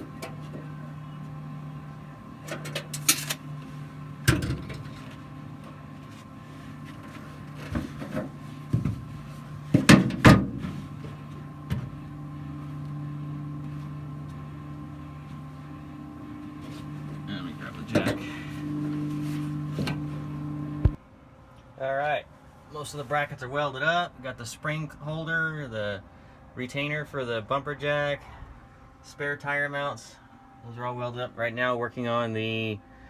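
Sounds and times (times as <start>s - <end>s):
steady low hum: 0.0s - 33.0s
sharp knocks and clanks: 7.0s - 12.0s.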